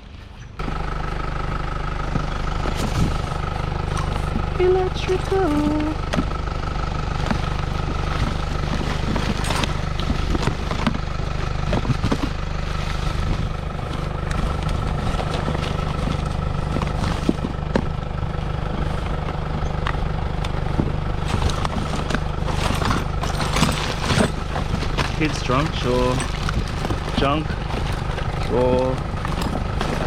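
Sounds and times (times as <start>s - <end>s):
clicks and knocks of handling: 7.2s - 18.0s, 18.8s - 30.0s.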